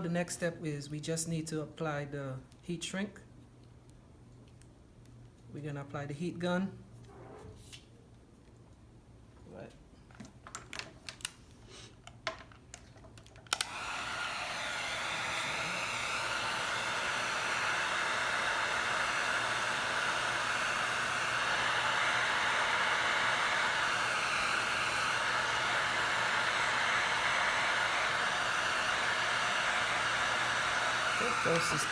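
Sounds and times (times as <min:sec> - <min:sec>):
heat gun blowing hiss: 0:13.6 - 0:31.9.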